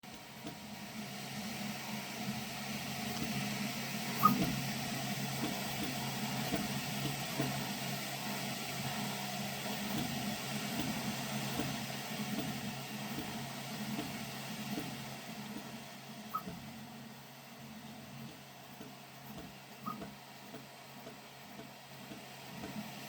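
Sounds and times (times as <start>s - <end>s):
stepper motors and fans humming: 0.0s - 23.0s
sharp click: 4.2s - 4.5s, 16.3s - 16.6s.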